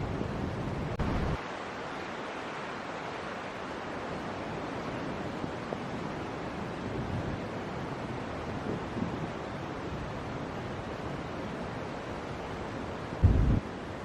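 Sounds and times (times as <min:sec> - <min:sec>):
low rumble: 0:13.2 - 0:13.6
outdoor rushing noise: 0:13.2 - 0:13.6.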